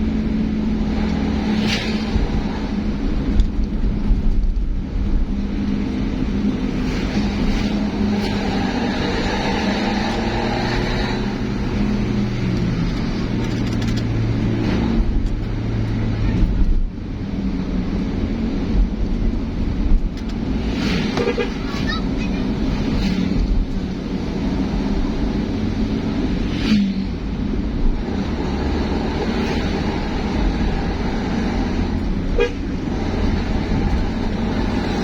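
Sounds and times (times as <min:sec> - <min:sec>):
vehicle engine running: 0:00.0 - 0:22.7
tyre and road noise: 0:00.0 - 0:35.0.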